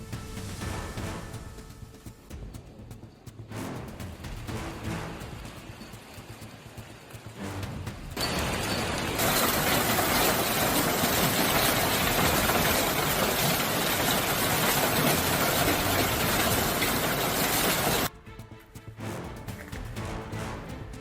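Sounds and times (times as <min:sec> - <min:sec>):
hail clattering: 0:02.8 - 0:18.1.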